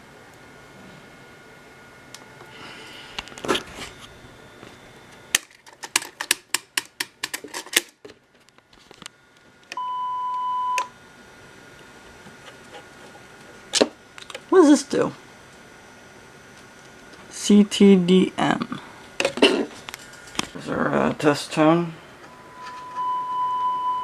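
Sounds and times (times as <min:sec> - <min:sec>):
steady test tone beep: 0:09.8 - 0:10.9, 0:22.2 - 0:24.0.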